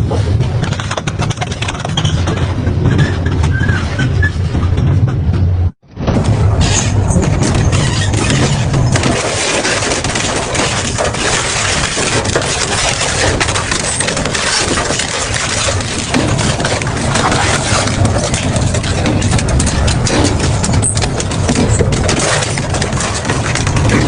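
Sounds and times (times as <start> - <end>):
industrial shredder tearing material: 6.0 - 24.0.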